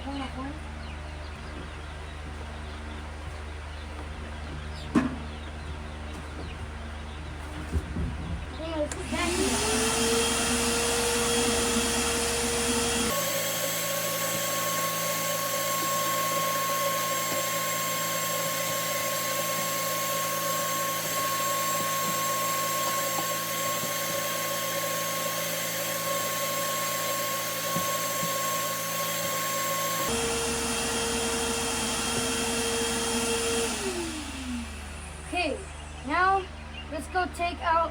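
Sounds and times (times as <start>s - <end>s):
small motor whining: 8.8s - 36.1s.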